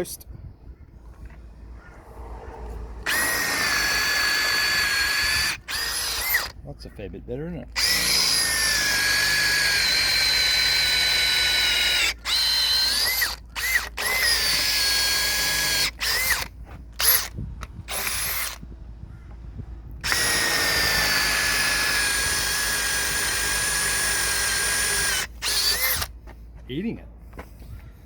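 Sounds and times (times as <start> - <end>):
drill boring into wood: 3.0 - 6.6, 7.8 - 18.6, 20.0 - 26.1.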